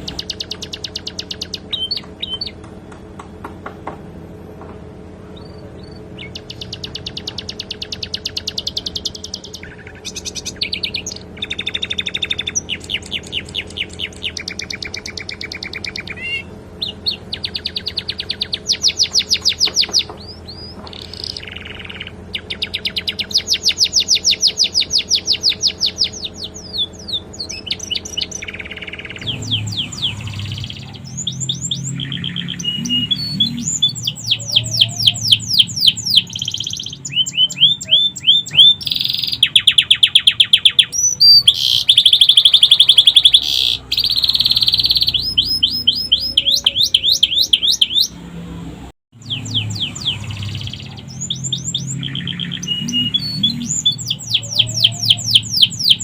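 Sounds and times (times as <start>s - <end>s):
canary singing trills: 0.0s - 3.0s, 5.3s - 48.3s, 49.2s - 56.0s
steady low hum: 0.0s - 41.5s.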